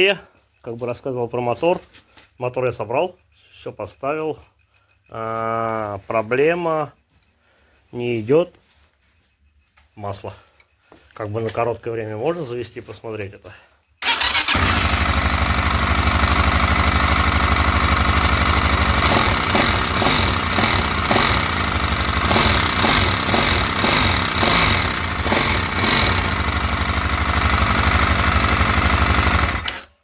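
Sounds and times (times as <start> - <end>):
motorcycle engine idling: 14.0 - 30.0.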